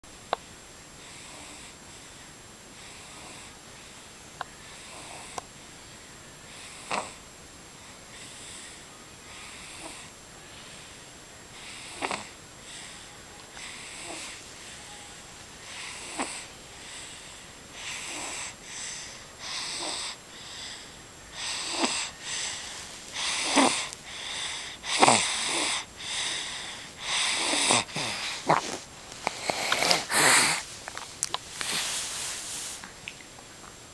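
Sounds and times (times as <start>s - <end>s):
baby snoring: 1.0s - 1.8s, 2.8s - 3.6s, 4.7s - 5.4s, 6.5s - 7.2s, 9.3s - 10.1s, 11.6s - 30.7s
baby snorting: 6.6s - 7.2s, 11.6s - 12.4s, 13.6s - 14.5s, 15.6s - 30.8s, 31.5s - 32.8s.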